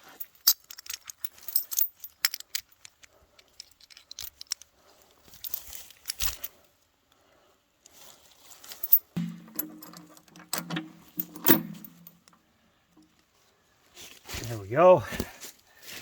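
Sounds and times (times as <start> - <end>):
steel chain clinking and rattling: 0.0 - 6.7, 8.6 - 12.4
heavy metal clunk: 9.2 - 12.3.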